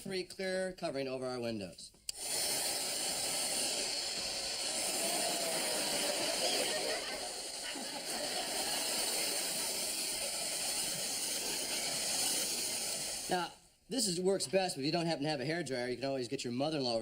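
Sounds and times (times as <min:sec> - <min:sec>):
hairdryer running: 0:02.1 - 0:13.4.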